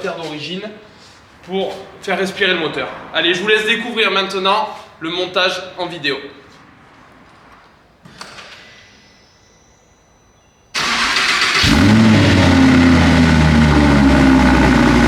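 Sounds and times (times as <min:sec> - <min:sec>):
car engine starting and idling: 0:10.8 - 0:15.0.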